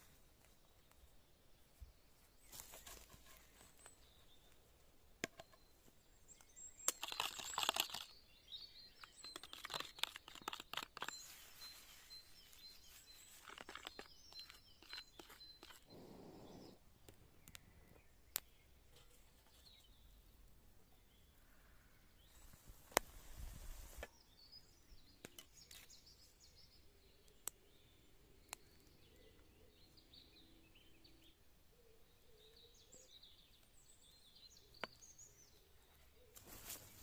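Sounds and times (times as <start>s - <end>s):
rustling and crinkling handling: 1.8s - 4.6s, 9.0s - 15.9s, 36.3s - 37.0s.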